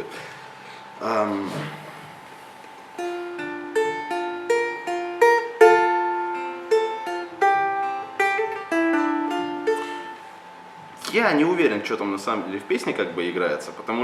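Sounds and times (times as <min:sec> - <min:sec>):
balalaika plucked notes: 0:03.0 - 0:10.2.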